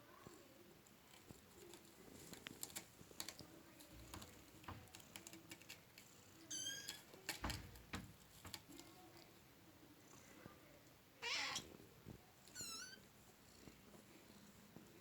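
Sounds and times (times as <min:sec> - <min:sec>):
kittens tapping and scuffling: 0:00.2 - 0:09.4.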